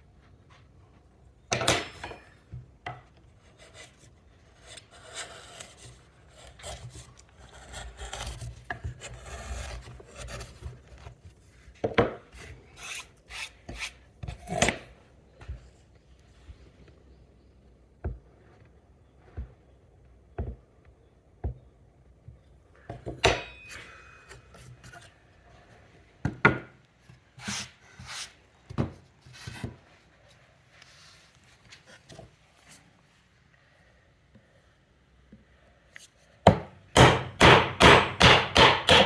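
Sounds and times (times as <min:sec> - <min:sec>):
chisel scraping wood: 0:03.4 - 0:11.2, 0:12.2 - 0:15.0
hammer striking a chisel: 0:23.2 - 0:23.8, 0:36.5 - 0:39.0.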